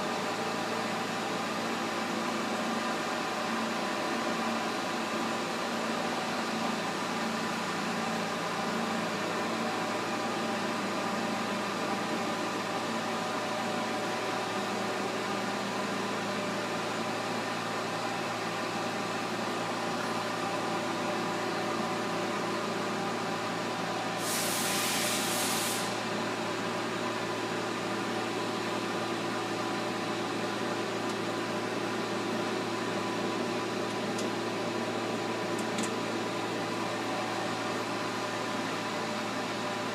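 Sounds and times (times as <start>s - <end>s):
brief hiss: 24.2s - 26.0s.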